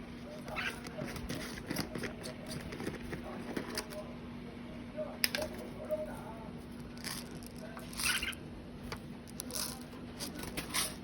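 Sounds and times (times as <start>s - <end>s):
bird pecking and crunching feed: 0.3s - 4.1s, 5.4s - 8.4s, 9.3s - 11.0s.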